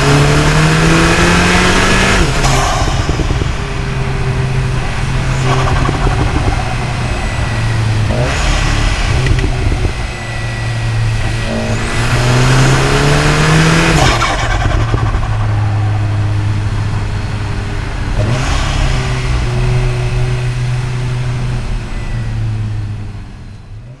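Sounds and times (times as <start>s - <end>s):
intake rush: 0.0s - 22.7s
high whine: 0.0s - 23.2s
car engine accelerating: 0.0s - 24.0s.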